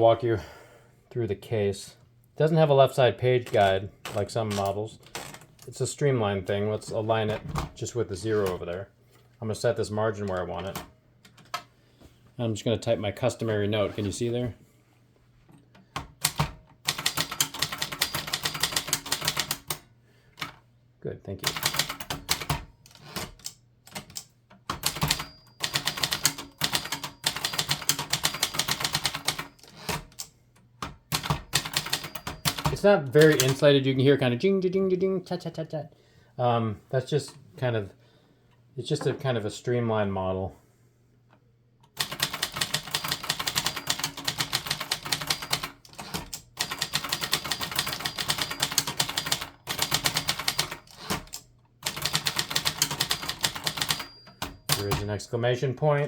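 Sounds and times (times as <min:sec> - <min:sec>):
typewriter typing: 0:16.0 - 0:20.6, 0:21.4 - 0:33.7, 0:42.0 - 0:55.1.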